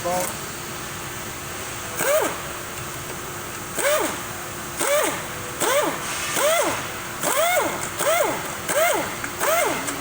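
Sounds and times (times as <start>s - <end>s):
cordless power tool motor whining: 4.8s - 10.0s.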